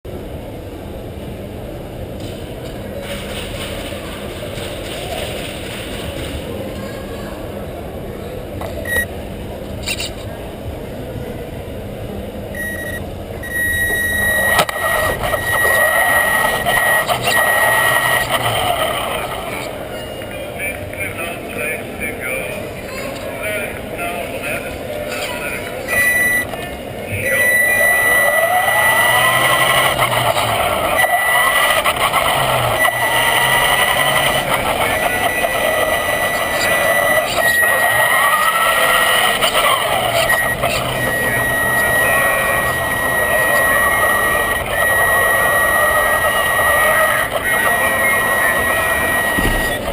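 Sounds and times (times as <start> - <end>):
electric motor whining: 13.4 - 19.9, 27.3 - 49.9.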